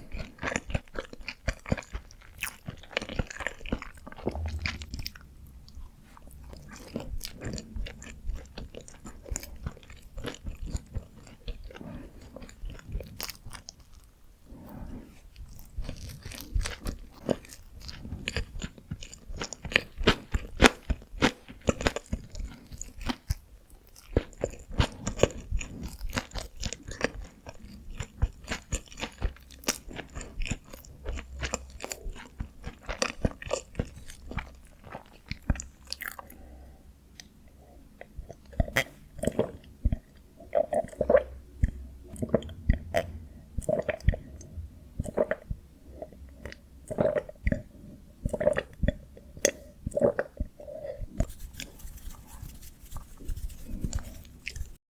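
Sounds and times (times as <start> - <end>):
close chewing and biting: 0.0 - 54.8
wet mouth clicks: 46.1 - 54.8.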